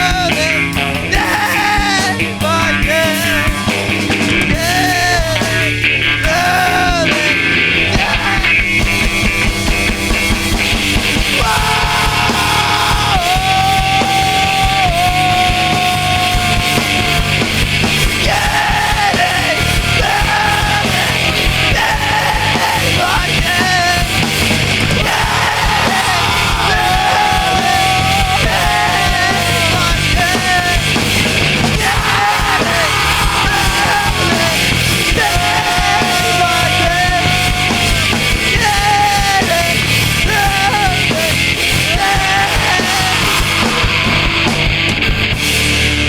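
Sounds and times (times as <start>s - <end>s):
punk rock band playing live: 0.0s - 46.0s
high bent guitar line: 2.1s - 46.0s.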